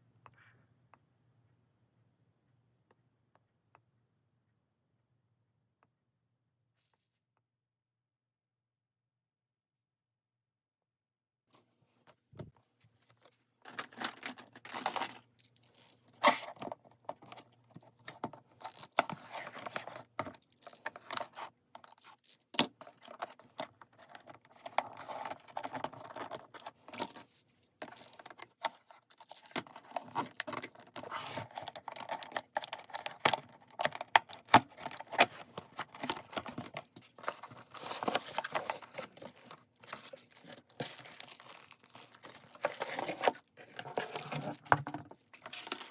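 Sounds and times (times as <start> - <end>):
packaging rustling and tearing: 22.8 - 45.9.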